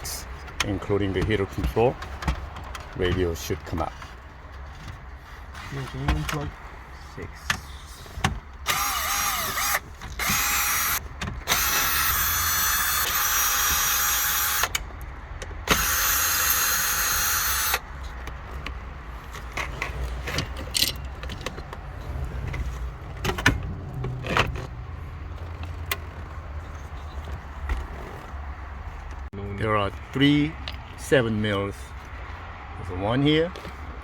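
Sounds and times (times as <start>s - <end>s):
parts clicking and knocking: 0.3s - 5.1s, 7.4s - 28.4s
power drill whining: 8.6s - 14.8s, 15.7s - 17.8s.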